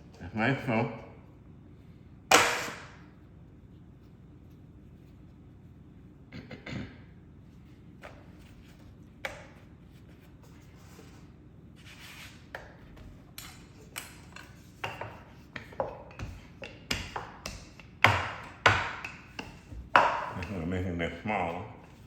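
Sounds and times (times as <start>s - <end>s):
utensils tapping on cutting board: 13.4s - 20.7s.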